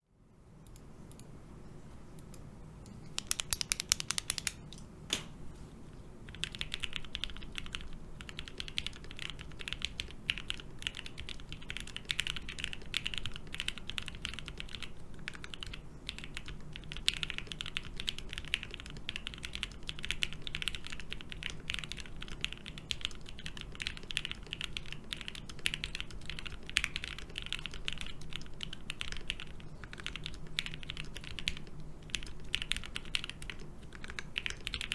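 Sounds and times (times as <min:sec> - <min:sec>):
typing on mechanical keyboard: 0:03.2 - 0:04.6, 0:06.3 - 0:34.9.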